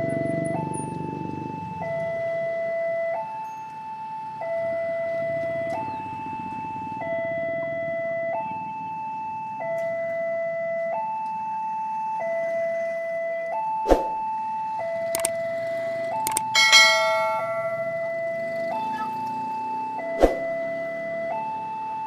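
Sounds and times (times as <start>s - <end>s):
two-tone crossing alarm: 0.0s - 22.0s
loud metallic clang: 16.6s - 17.8s.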